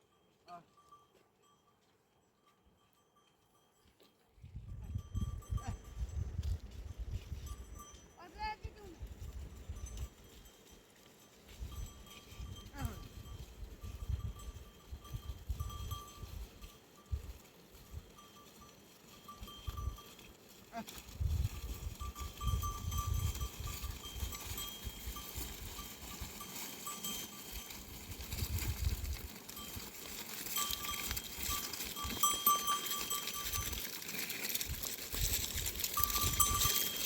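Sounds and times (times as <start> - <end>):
goat bells clanking: 0.0 - 37.0
wind rumbling on microphone: 4.4 - 8.0, 8.8 - 10.2, 11.5 - 18.1, 21.0 - 26.4, 27.6 - 29.8, 34.6 - 37.0.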